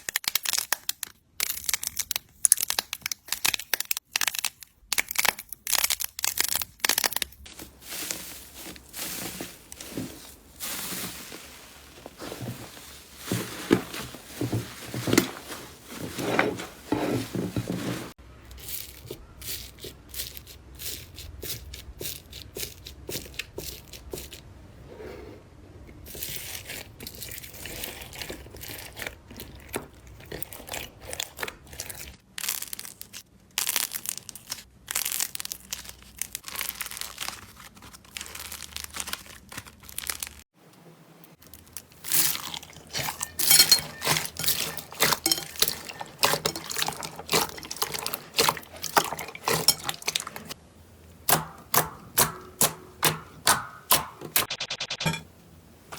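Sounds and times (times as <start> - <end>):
slime squeezed crackling: 31.1 - 40.4.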